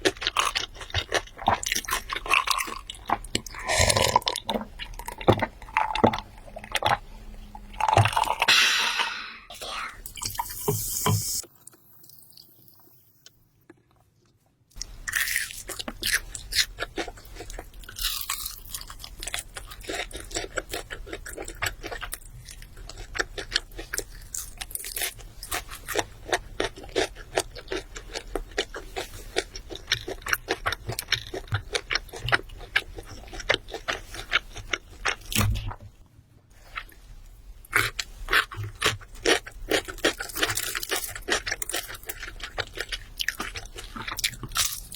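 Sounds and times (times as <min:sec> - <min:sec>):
crunchy chewing: 0:14.7 - 0:35.4, 0:37.7 - 0:44.9.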